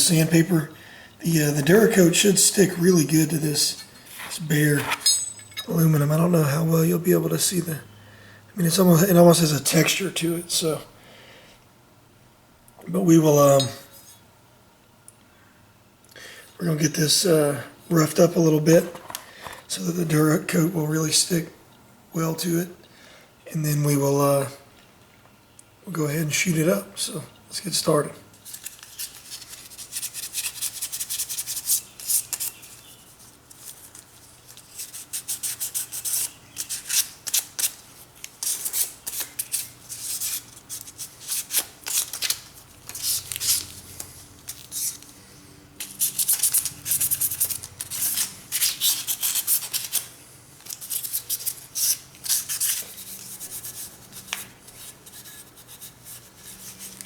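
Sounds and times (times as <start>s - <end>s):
sandpaper scuffing metal: 34.5s - 45.0s, 45.8s - 50.1s, 50.7s - 57.0s.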